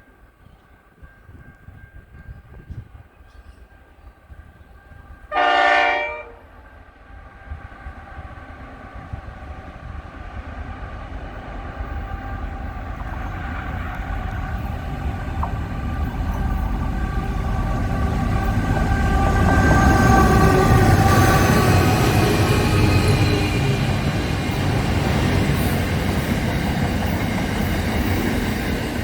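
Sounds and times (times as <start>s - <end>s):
approaching train rumble: 0.0s - 29.0s
train horn blast: 5.3s - 6.7s, 18.2s - 23.8s.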